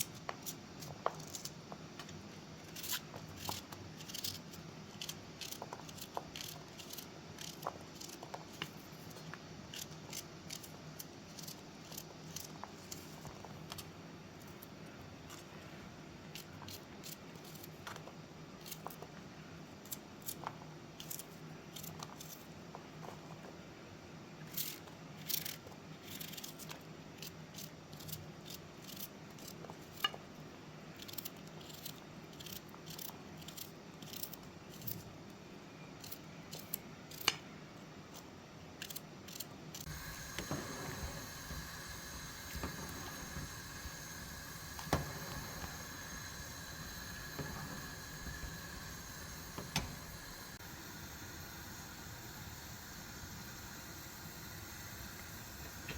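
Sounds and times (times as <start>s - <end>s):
low steady background noise: 0.0s - 55.9s
steady hiss: 39.8s - 55.9s.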